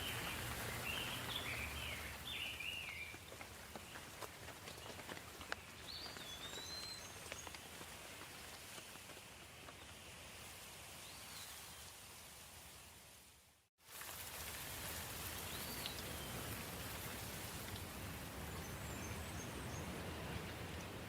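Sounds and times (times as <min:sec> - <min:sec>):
bird chirping: 0:00.0 - 0:03.2, 0:05.6 - 0:07.5
soft rain with drop ticks: 0:00.0 - 0:10.7, 0:13.8 - 0:21.0.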